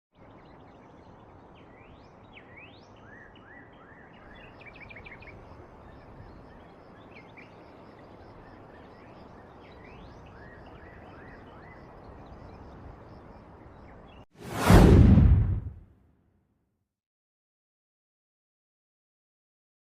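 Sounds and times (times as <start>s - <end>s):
birds chirping: 0.2s - 14.2s
steady background hiss: 0.2s - 14.2s.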